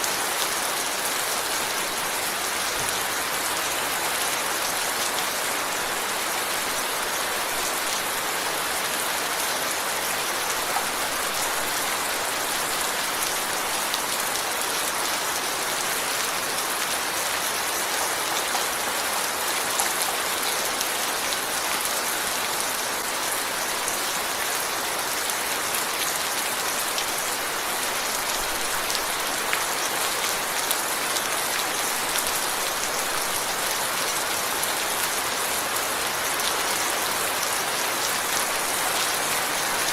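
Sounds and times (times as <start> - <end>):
steady rain hiss: 19.0 - 39.9.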